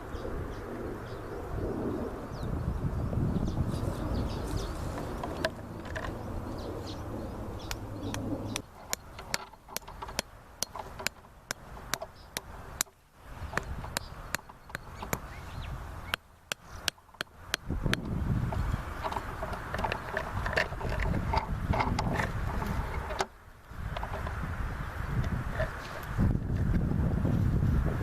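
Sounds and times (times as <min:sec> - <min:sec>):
faint bird calls: 0:00.0 - 0:10.1
steady low rumble: 0:00.0 - 0:28.0.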